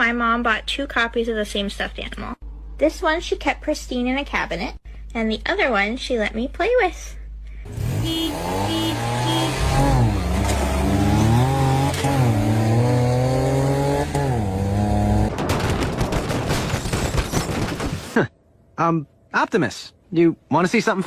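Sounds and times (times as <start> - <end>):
engine revving: 7.6 - 15.3.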